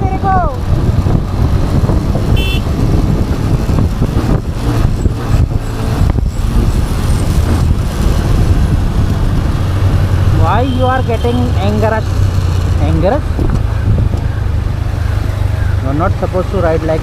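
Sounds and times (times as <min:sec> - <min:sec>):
motorcycle engine rumbling: 0:00.0 - 0:17.0
horn toot: 0:02.3 - 0:02.7.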